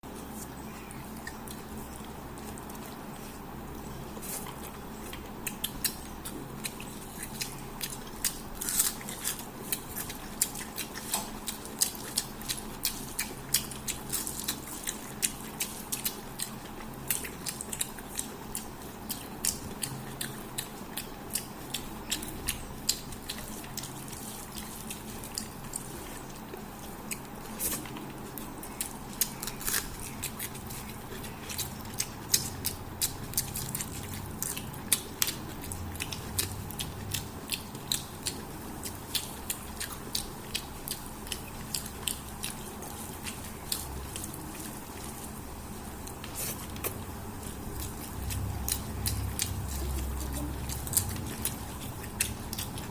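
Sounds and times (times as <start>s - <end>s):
wet chewing: 0.1s - 52.9s
low hum: 41.3s - 52.9s.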